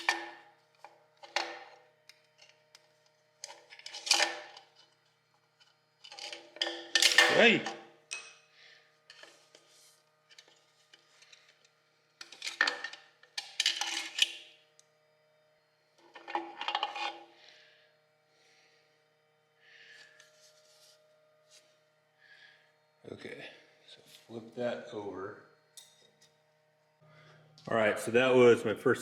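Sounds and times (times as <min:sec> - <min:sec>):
metal parts clinking and scraping: 0:03.4 - 0:04.8, 0:06.0 - 0:08.3, 0:10.3 - 0:14.4, 0:16.1 - 0:17.2.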